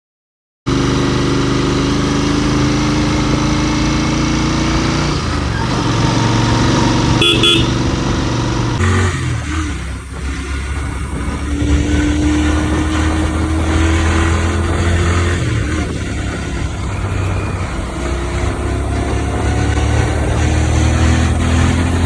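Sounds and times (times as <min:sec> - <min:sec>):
motorcycle engine running: 0:00.7 - 0:22.0
horn beeps: 0:07.0 - 0:07.9.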